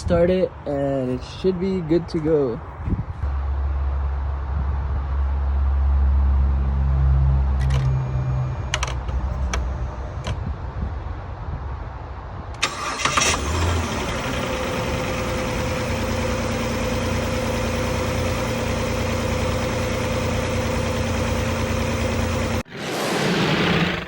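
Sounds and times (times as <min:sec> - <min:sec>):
car engine cranking and idling: 0:07.4 - 0:10.4, 0:12.5 - 0:22.7.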